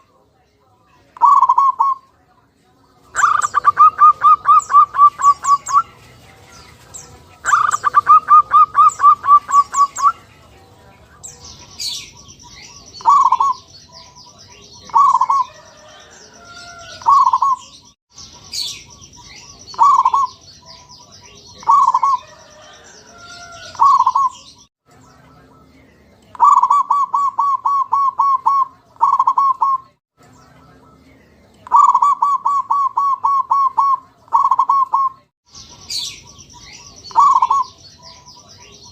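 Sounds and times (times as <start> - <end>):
dove cooing: 1.2 - 2.1, 3.1 - 10.3, 12.7 - 13.7, 14.8 - 17.7, 19.4 - 20.4, 21.6 - 24.4, 26.4 - 29.9, 31.7 - 35.2, 37.1 - 37.8.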